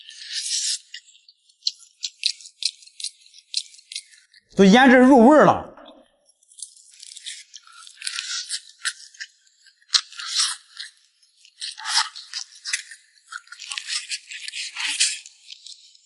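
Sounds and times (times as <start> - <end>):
crunching crisp food: 6.4 - 16.0.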